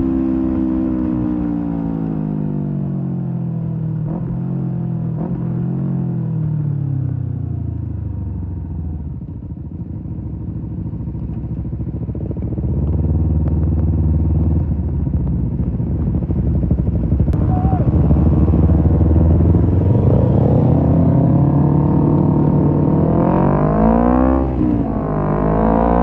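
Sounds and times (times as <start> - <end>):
motorcycle engine revving: 3.2 - 8.0, 10.6 - 26.0.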